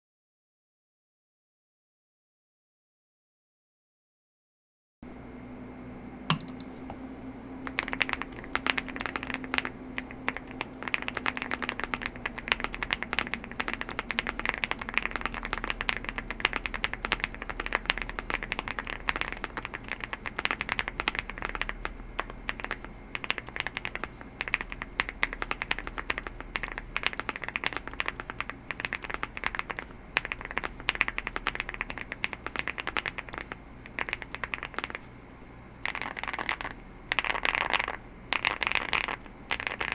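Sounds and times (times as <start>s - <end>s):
mechanical keyboard typing: 6.3s - 6.7s, 7.7s - 35.1s, 35.8s - 39.9s.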